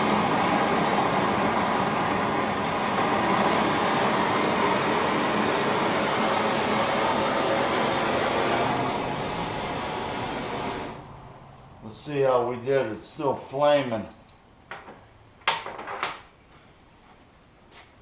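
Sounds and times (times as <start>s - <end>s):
gas torch flame hissing: 0.0s - 11.1s.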